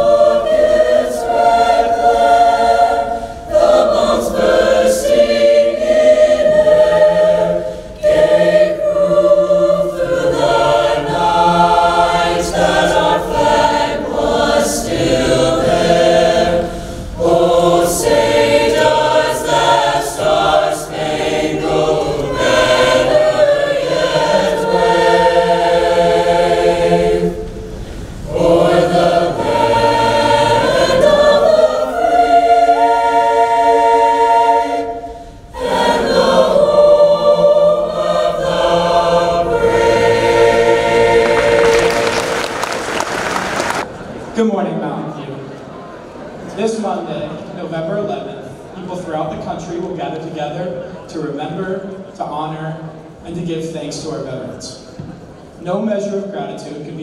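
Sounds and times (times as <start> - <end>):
choir singing: 0.0 - 44.3.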